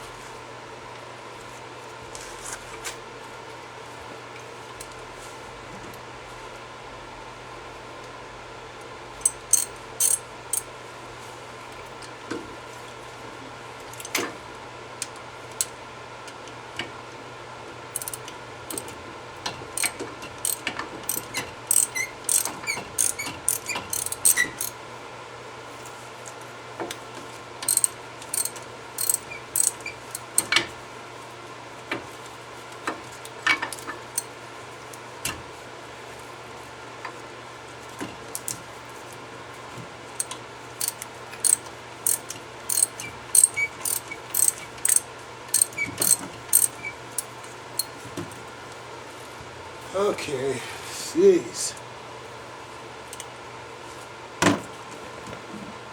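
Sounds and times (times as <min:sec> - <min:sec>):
ratchet wrench clicking: 0:09.2 - 0:10.7, 0:18.0 - 0:18.9, 0:19.8 - 0:24.8, 0:27.7 - 0:29.8, 0:40.2 - 0:47.9.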